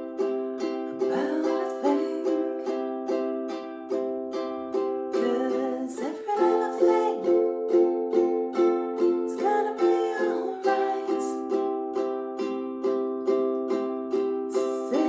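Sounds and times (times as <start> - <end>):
ukulele strumming: 0.0 - 15.0
woman singing: 1.0 - 2.9, 5.0 - 8.6, 9.2 - 11.8, 14.5 - 15.0.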